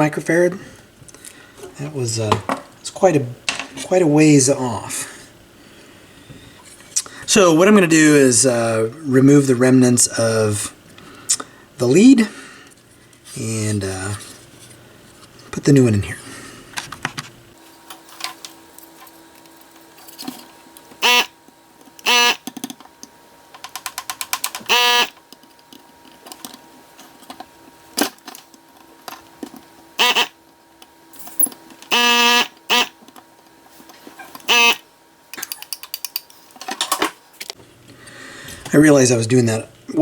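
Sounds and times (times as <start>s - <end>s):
faint steady hum: 0.0s - 40.0s
vacuum pump buzzes: 20.3s - 22.6s, 24.4s - 25.4s, 26.9s - 35.3s.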